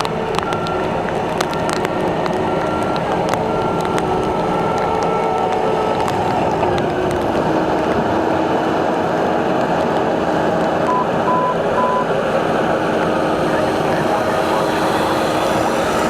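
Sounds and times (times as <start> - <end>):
reversing alarm beeping: 0.0 - 7.6, 10.9 - 12.1
heavy equipment engine running: 0.0 - 16.0.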